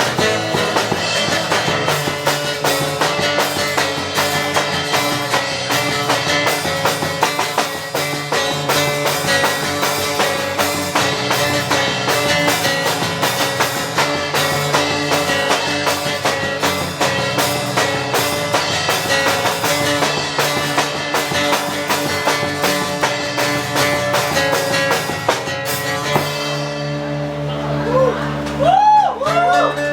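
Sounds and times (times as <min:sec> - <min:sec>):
drum kit beat: 0:00.0 - 0:29.9
guitars strumming: 0:00.0 - 0:29.9.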